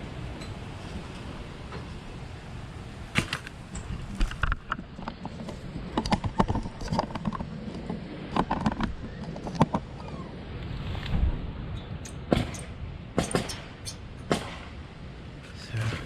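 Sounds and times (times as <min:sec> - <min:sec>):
knocks and clinks on blower: 0:12.1 - 0:14.6.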